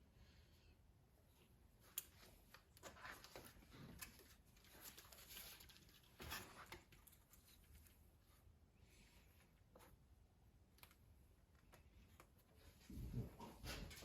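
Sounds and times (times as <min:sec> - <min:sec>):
light clicks of small parts: 0:01.8 - 0:08.0, 0:10.6 - 0:12.6.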